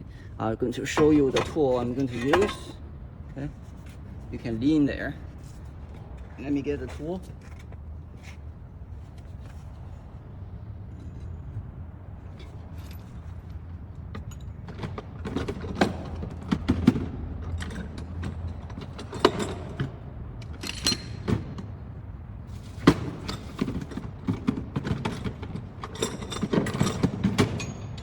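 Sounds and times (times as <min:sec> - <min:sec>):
metal hand tools clinking: 0:00.9 - 0:02.8.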